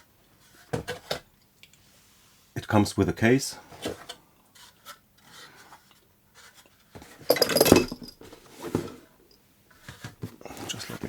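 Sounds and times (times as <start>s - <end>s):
case clicks and knocks: 7.3s - 8.2s.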